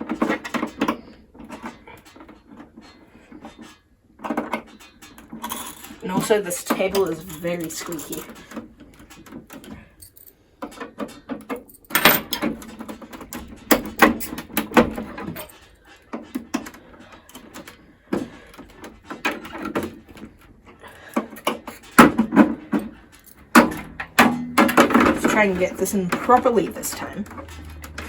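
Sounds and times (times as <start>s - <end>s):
computer parts clicking and rattling: 0.0s - 28.0s.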